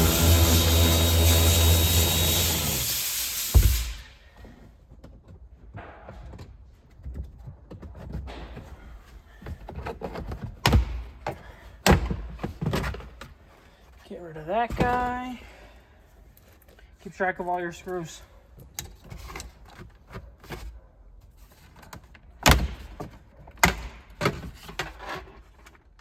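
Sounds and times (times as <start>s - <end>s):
steady motor hum: 0.0s - 4.1s
loud hissing spray: 0.0s - 4.2s.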